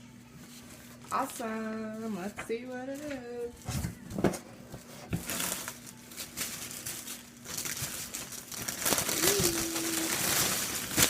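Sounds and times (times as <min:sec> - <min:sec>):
packing material crinkling: 0:05.2 - 0:11.0.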